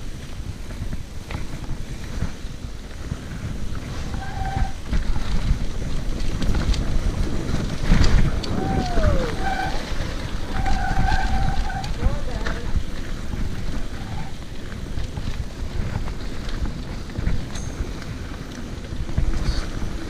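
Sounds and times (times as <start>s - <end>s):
tyres rumbling on dirt and rock: 0.0s - 20.0s
wind buffeting microphone: 0.0s - 20.0s
short squealing tones: 8.5s - 9.9s.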